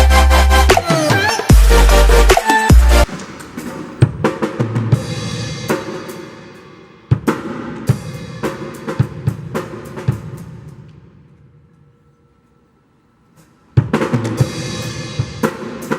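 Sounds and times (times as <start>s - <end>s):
cymbal ringing: 0.0s - 10.6s
drum kit playing: 0.0s - 10.7s.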